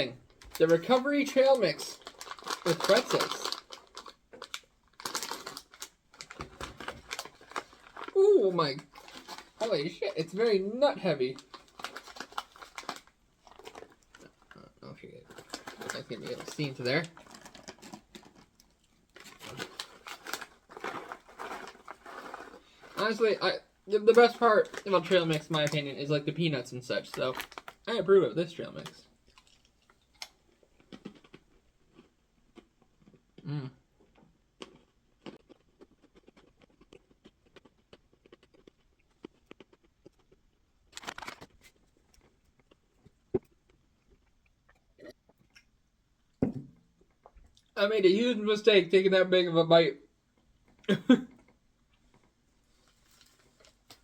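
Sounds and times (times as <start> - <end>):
crunching snacks: 0.3 - 10.4, 11.2 - 27.9, 28.6 - 44.3
pouch crinkling: 1.8 - 8.2, 8.8 - 9.7, 11.4 - 14.5, 15.2 - 23.2, 27.0 - 27.8, 41.0 - 42.2
chewing crunchy food: 29.2 - 45.8.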